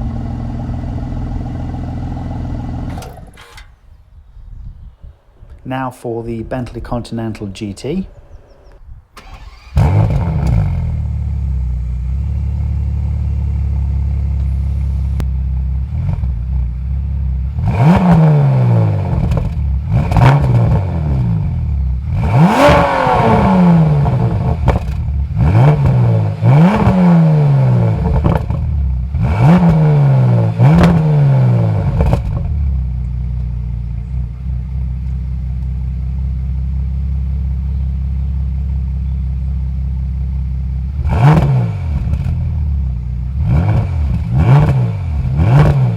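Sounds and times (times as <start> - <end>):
car engine starting and idling: 0.0 - 4.9, 7.4 - 45.9
car engine revving: 9.2 - 32.8, 40.9 - 45.9.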